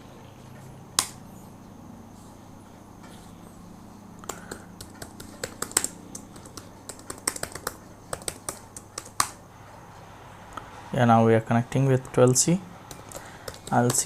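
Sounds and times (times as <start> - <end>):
computer keyboard typing: 4.2 - 9.4, 12.2 - 14.0.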